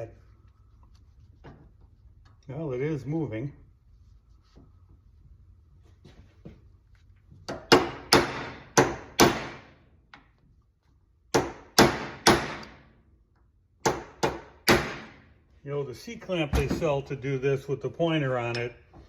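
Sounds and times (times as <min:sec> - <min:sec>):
hammer striking metal punch: 0:07.5 - 0:09.7, 0:11.3 - 0:12.8, 0:13.8 - 0:15.2.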